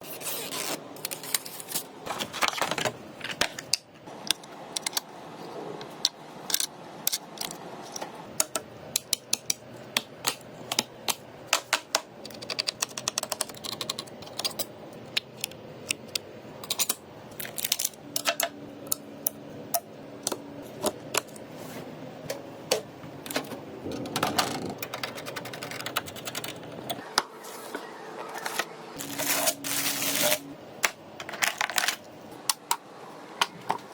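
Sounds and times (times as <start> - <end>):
computer parts clicking: 23.3 - 27.0.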